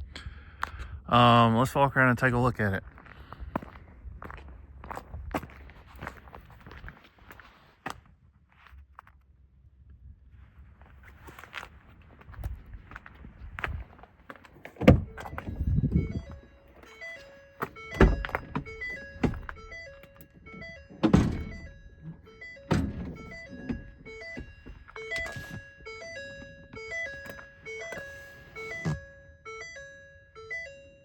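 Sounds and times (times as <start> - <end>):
electronic chime: 15.0 - 31.0
loud thumps: 21.0 - 21.8, 22.6 - 25.7.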